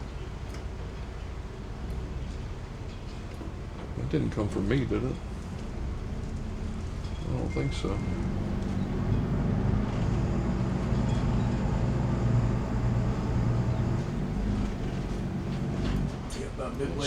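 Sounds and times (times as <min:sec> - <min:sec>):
diesel engines droning: 0:04.0 - 0:17.0.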